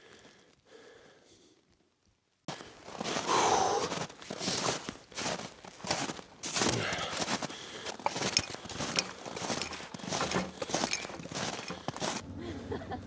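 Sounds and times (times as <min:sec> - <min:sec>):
boots crunching through snow: 0:02.5 - 0:12.2.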